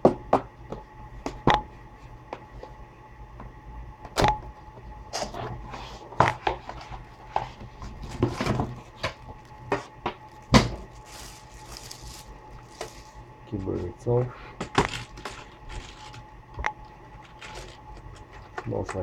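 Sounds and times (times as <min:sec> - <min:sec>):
packaging rustling: 0:06.6 - 0:13.3, 0:14.6 - 0:19.0.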